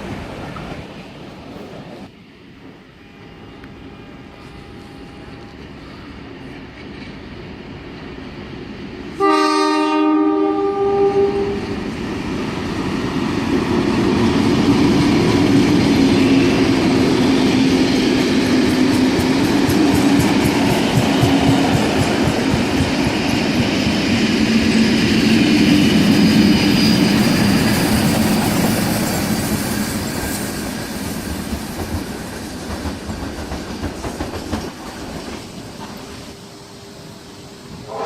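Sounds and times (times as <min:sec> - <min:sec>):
train rumble and rail clatter: 0:00.0 - 0:38.0
train horn: 0:09.2 - 0:11.8, 0:37.8 - 0:38.0.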